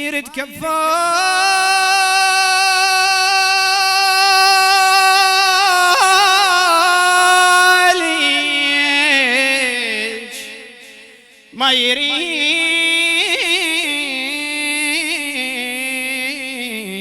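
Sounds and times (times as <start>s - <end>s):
man singing a lament: 0.0s - 17.0s.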